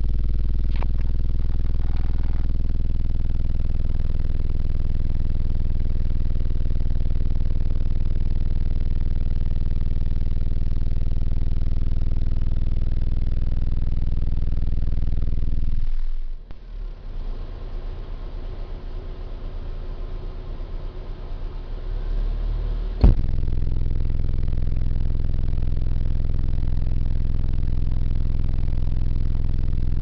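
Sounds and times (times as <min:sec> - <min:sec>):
deep bass tone: 0:00.0 - 0:30.0.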